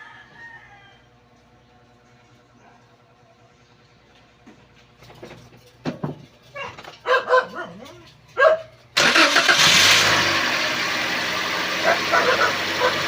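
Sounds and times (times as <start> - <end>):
dog barking and yipping: 6.5 - 9.2, 11.8 - 13.0
loud mechanical rush: 9.0 - 13.0.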